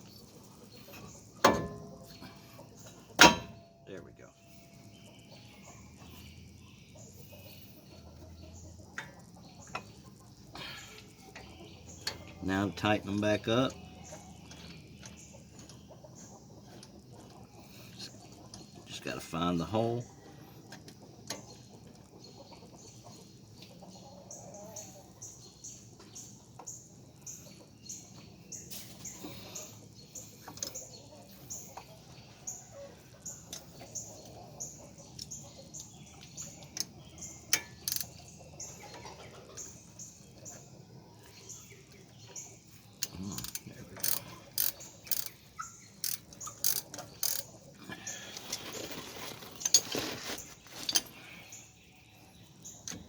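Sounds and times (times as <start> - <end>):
ratchet wrench clicking: 37.5 - 38.2, 43.0 - 45.4, 46.0 - 47.5.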